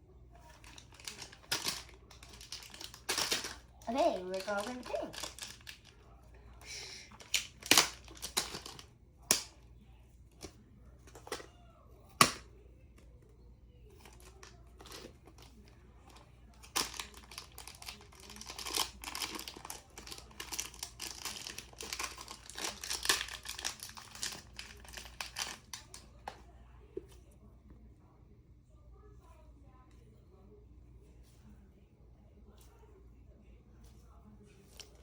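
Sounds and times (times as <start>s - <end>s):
plastic crinkling: 0.4s - 6.2s, 7.1s - 8.9s, 16.5s - 26.3s
packaging clicks: 0.6s - 3.6s, 4.3s - 5.9s, 7.1s - 9.5s, 16.6s - 26.0s
plastic packaging tearing: 0.6s - 5.9s, 7.2s - 9.4s, 16.6s - 26.0s.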